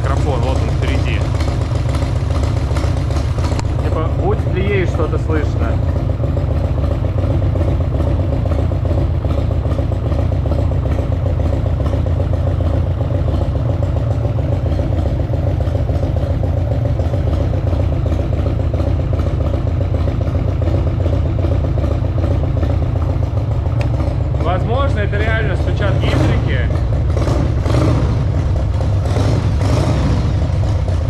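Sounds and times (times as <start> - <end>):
light engine knocking: 0.0 - 31.0
motorcycle engine idling: 0.0 - 31.0.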